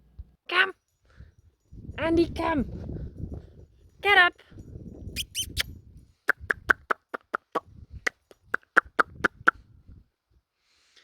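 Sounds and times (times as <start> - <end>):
person clicking tongue: 6.3 - 7.6.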